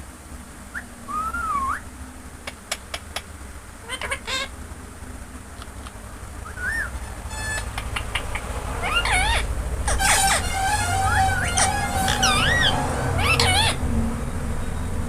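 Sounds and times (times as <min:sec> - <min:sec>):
parrot chirps: 0:00.7 - 0:01.8, 0:02.5 - 0:04.5, 0:05.6 - 0:13.8
parrot clicks: 0:02.5 - 0:03.3, 0:07.7 - 0:08.5
parrot buzzy trill: 0:03.8 - 0:04.5, 0:06.4 - 0:13.8
parrot whistled note: 0:06.5 - 0:07.8, 0:08.9 - 0:13.8.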